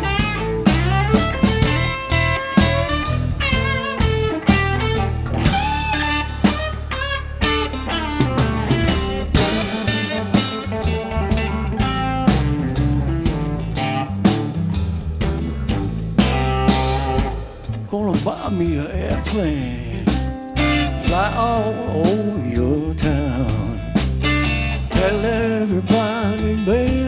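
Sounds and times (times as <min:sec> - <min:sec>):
electric guitar lead bending notes: 0:00.0 - 0:18.0
bass guitar: 0:00.0 - 0:27.0
drum kit beat: 0:00.0 - 0:27.0.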